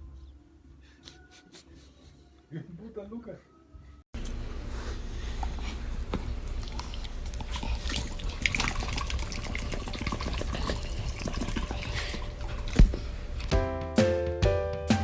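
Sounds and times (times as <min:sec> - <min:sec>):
water splashing and sloshing: 0:06.4 - 0:13.1.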